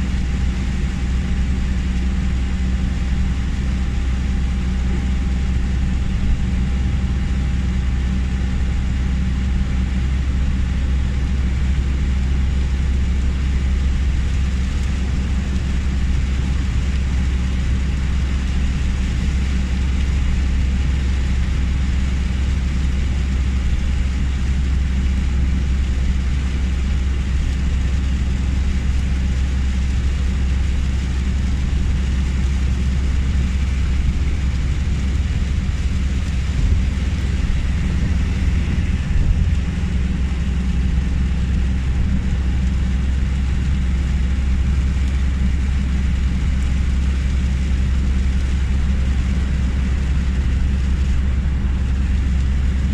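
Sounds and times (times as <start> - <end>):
car rumble: 0.0 - 52.9
rain and tyre spray hiss: 9.6 - 52.9.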